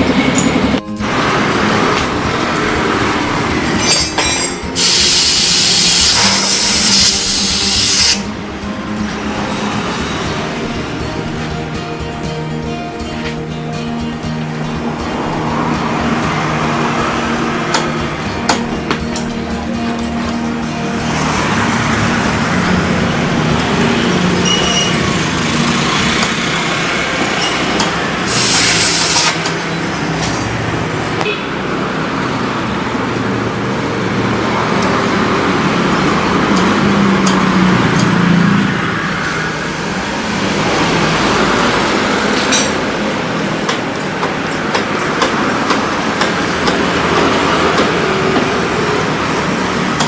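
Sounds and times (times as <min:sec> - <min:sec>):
traffic noise: 0:00.0 - 0:50.0.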